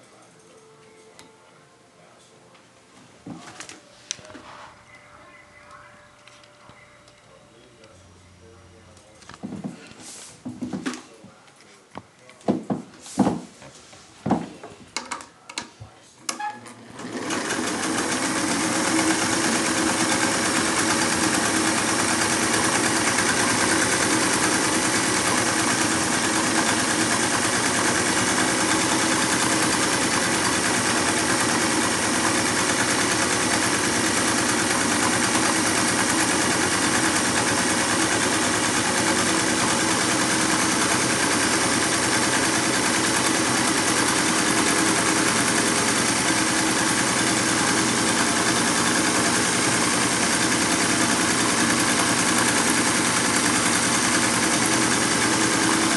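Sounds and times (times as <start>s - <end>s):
sewing machine running: 16.7s - 55.9s.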